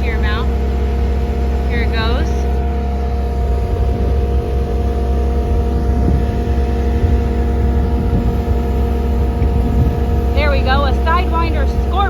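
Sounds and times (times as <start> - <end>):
loud engine drone: 0.0 - 12.0
mower high whine: 0.0 - 12.0.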